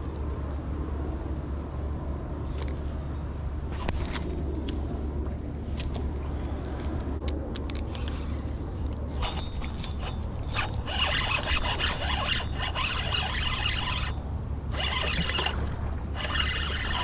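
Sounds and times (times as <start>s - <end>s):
fishing reel ratcheting clicks: 9.2s - 17.0s.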